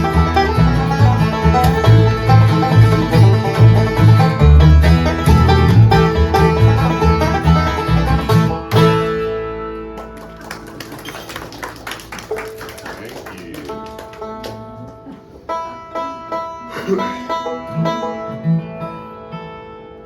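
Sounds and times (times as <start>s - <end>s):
bass pulse: 0.0s - 9.7s
banjo: 0.0s - 10.7s, 13.7s - 20.0s
bluegrass band playing: 0.0s - 20.0s.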